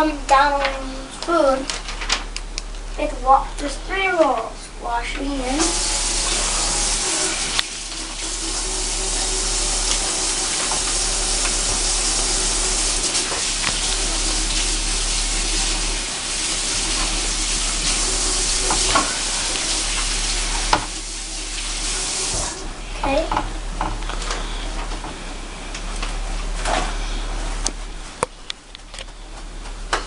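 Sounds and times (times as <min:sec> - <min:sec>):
tap water running: 0:05.2 - 0:24.3.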